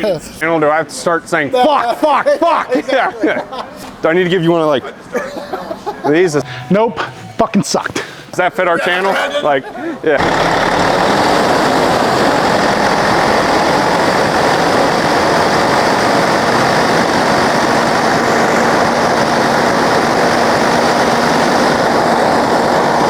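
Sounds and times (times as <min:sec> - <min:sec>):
diesel engine running: 0:09.8 - 0:23.0.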